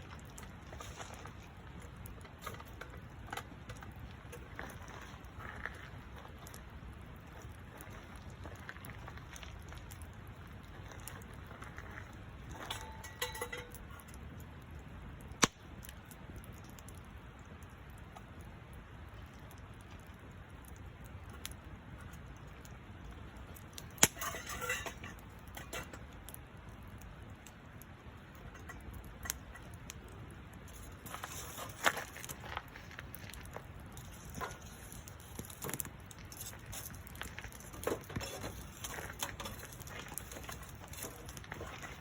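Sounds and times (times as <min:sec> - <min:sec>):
campfire pops and crackles: 0:00.0 - 0:42.0
low steady background noise: 0:00.0 - 0:42.0.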